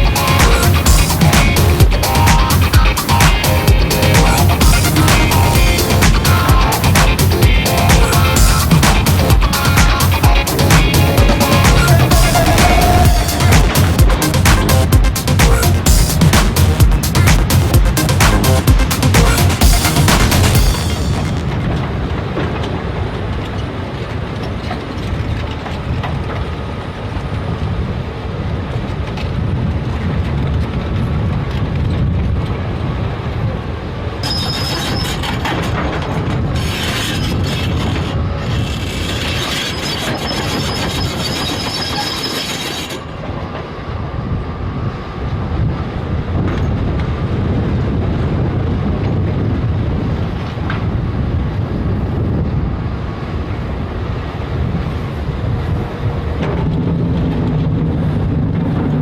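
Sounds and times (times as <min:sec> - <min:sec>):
diesel engine rumble: 0:00.0 - 0:21.9
steel tracks clanking: 0:00.0 - 0:27.3, 0:32.5 - 0:45.2
high metallic squeal: 0:34.2 - 0:35.5, 0:36.6 - 0:43.2.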